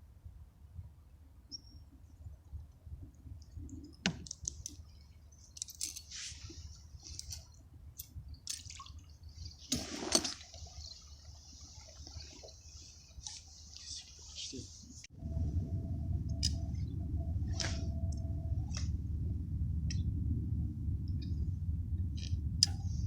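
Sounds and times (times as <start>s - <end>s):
water splashing and dripping: 8.4s - 14.6s.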